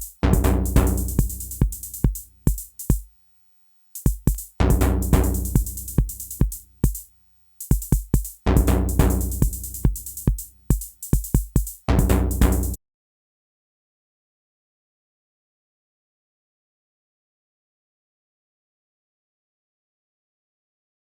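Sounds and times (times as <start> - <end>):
drum machine pattern: 0.0 - 3.1, 4.0 - 12.8.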